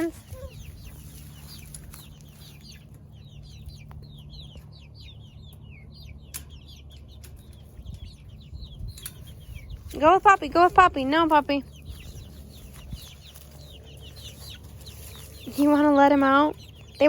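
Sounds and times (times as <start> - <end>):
chickens calling: 0.0 - 17.0.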